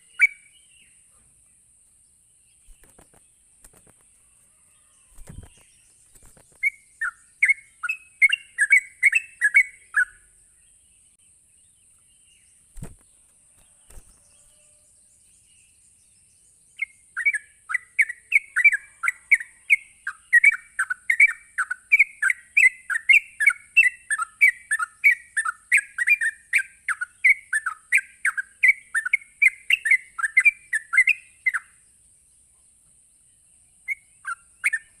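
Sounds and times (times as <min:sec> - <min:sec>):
bird bubbling chattering song: 0:05.3 - 0:10.2.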